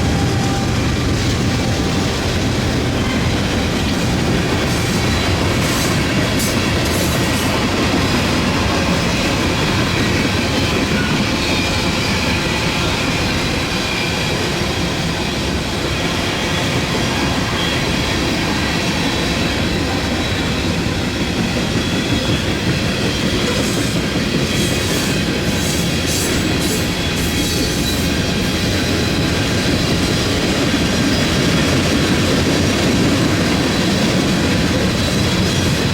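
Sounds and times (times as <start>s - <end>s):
train wheels rumbling on rails: 0.0s - 35.9s.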